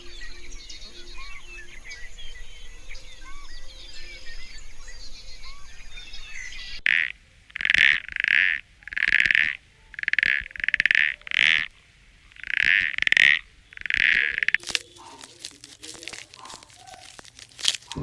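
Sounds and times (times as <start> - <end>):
small birds chirping: 0.0 - 18.0
frog croaking: 6.8 - 18.0.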